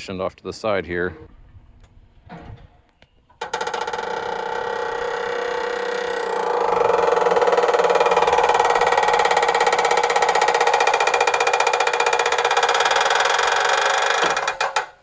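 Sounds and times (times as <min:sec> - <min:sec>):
buzzing machine drone: 0:03.4 - 0:14.5.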